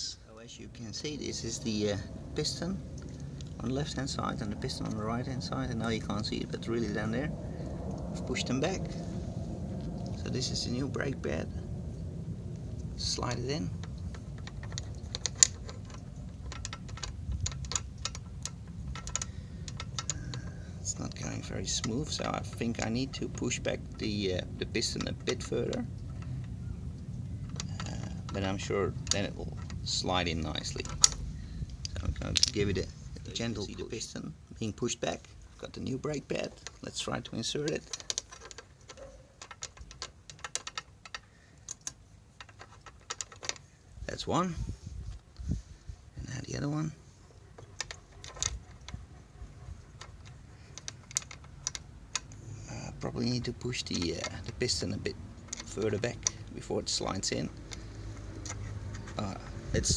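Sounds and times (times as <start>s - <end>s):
light metallic clicks and taps: 13.0s - 26.6s, 27.5s - 33.4s, 49.9s - 59.9s
metallic clicks and taps: 37.7s - 43.6s, 49.9s - 52.4s, 53.2s - 59.8s.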